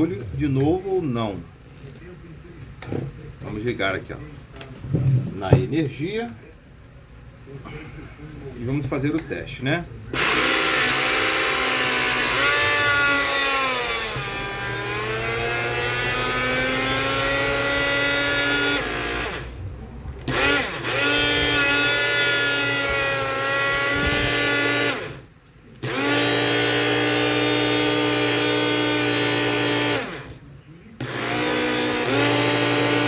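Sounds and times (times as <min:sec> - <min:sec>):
blender motor whining: 0:10.1 - 0:30.4, 0:31.0 - 0:33.0.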